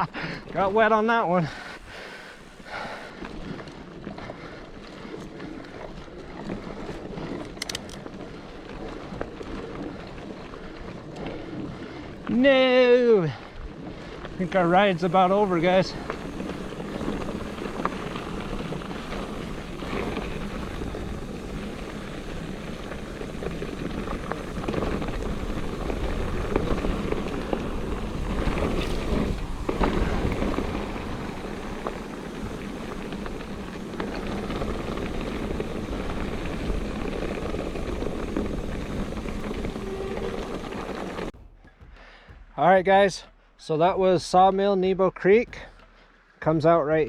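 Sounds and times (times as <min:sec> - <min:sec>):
bike tyres on dirt: 0:00.0 - 0:47.0
bike frame rattling: 0:05.2 - 0:11.7, 0:13.3 - 0:43.1
wind buffeting microphone: 0:13.3 - 0:47.0
sharp knocks: 0:41.3 - 0:43.6.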